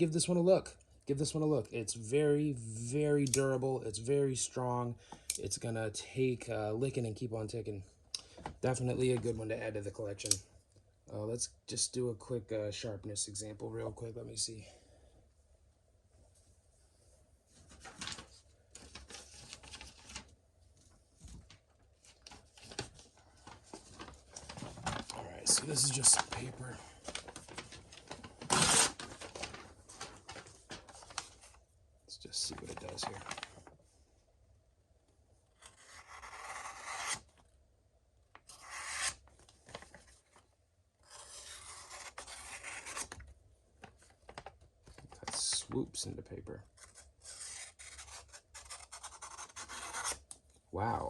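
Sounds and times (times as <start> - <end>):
paper rustling and crinkling: 17.5 - 31.6, 32.4 - 33.8, 38.7 - 45.8
knife slicing paper: 38.5 - 39.2, 46.8 - 50.2.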